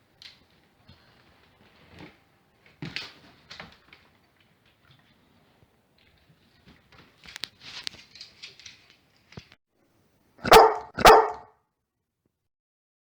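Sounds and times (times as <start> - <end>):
light rustling and clicking: 6.0 - 9.6
dog barking: 10.4 - 11.5.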